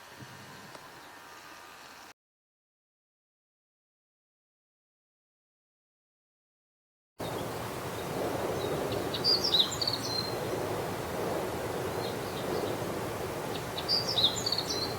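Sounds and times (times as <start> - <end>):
bird singing high chirps: 7.2 - 10.4, 13.5 - 14.9.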